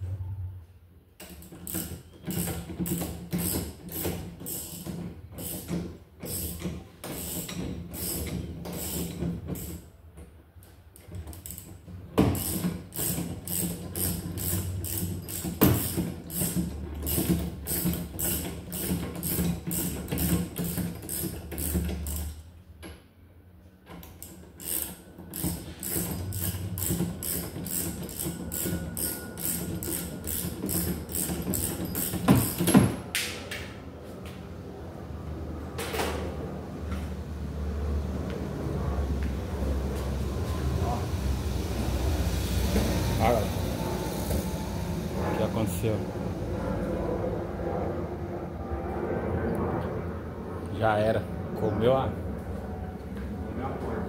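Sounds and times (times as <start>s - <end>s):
ratchet wrench clicking: 1.2s - 9.8s, 11.3s - 22.4s, 24.0s - 32.8s
steady low hum: 25.3s - 54.0s.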